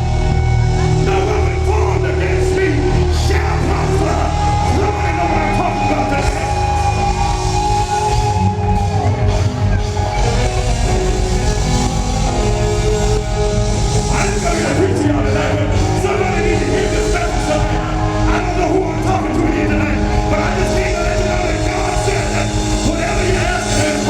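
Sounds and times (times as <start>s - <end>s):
heavy bass: 0.0s - 24.0s
live band playing: 0.0s - 24.0s
person singing: 0.7s - 24.0s.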